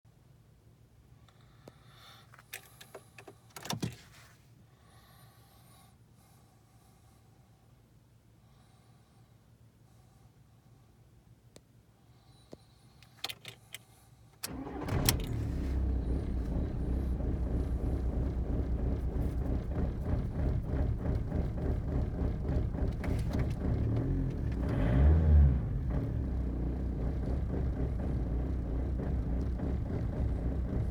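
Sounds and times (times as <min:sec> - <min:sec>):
diesel engine starting and idling: 0:14.4 - 0:30.9.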